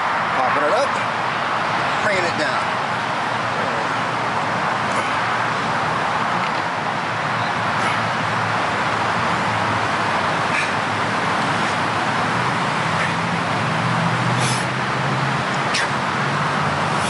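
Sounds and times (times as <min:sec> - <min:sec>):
steady background noise: 0:00.0 - 0:17.0.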